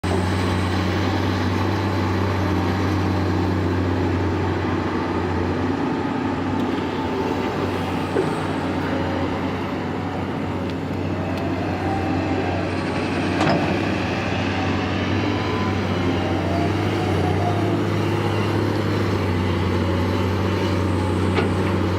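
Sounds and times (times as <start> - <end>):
excavator diesel engine running: 0.0 - 21.9.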